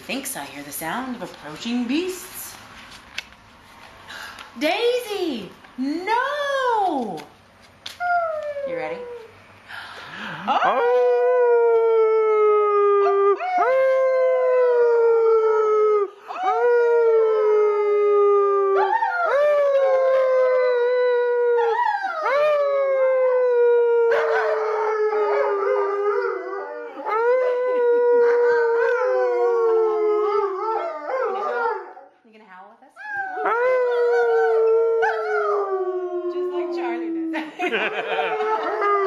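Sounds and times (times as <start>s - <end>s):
dog howling: 10.6s - 32.1s, 33.0s - 37.1s.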